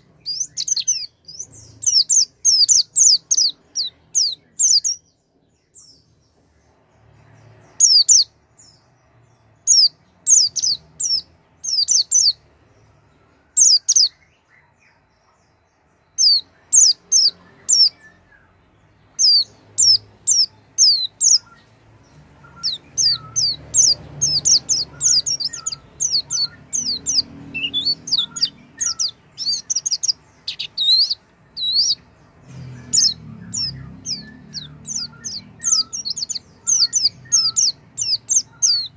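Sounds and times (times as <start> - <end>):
bird high thin chirps: 22.4 - 38.9.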